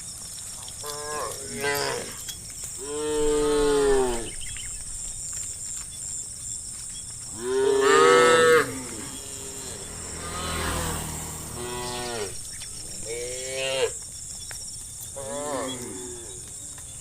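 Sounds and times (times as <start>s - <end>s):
cows mooing: 0.8s - 2.2s, 2.8s - 4.4s, 7.3s - 14.0s, 15.2s - 16.5s.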